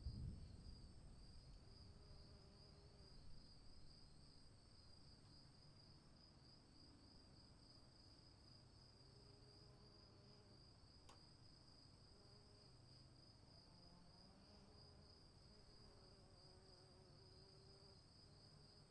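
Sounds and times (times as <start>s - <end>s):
low thunder rumble: 0.0s - 1.4s.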